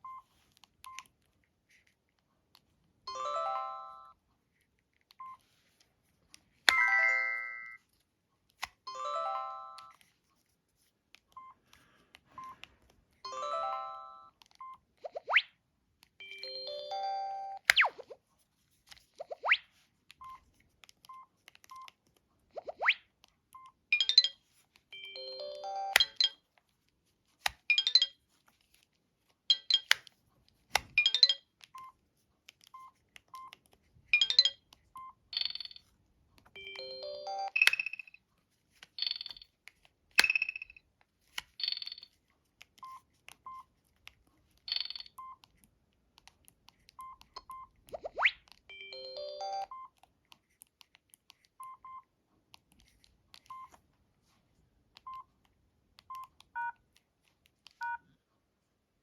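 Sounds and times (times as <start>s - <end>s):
electronic phone ringtone: 3.1s - 4.2s, 6.7s - 7.8s, 8.9s - 10.0s, 13.3s - 14.4s, 16.2s - 17.7s, 24.0s - 26.4s, 36.6s - 38.2s, 48.7s - 49.8s.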